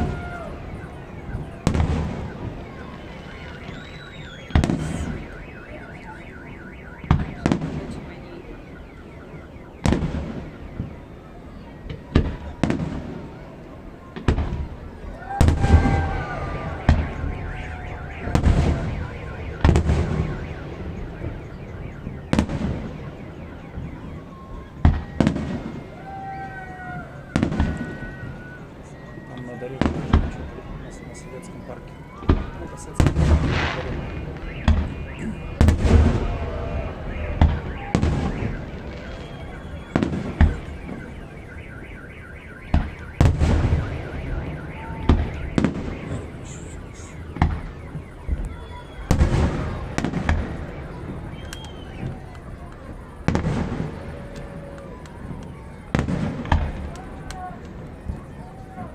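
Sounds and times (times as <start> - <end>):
car alarm warbling: 0.0 - 58.9
fireworks bangs: 0.0 - 58.9
fireworks crackling: 0.0 - 58.9
fireworks whistling: 0.0 - 58.9.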